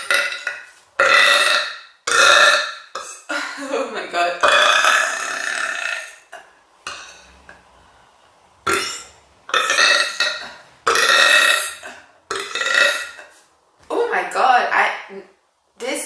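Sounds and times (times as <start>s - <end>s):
woman burping: 0.0s - 7.2s, 8.6s - 13.2s.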